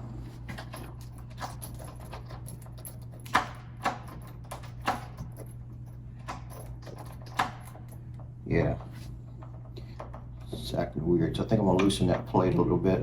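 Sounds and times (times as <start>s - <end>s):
steady low hum: 0.0s - 13.0s
door lock metallic clicks and rattles: 0.6s - 5.6s, 6.2s - 7.9s.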